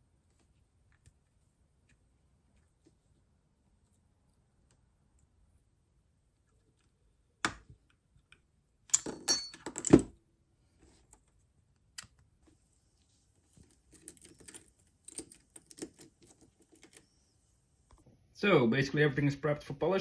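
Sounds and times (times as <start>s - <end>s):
watch parts clicking and clinking: 13.5s - 17.3s.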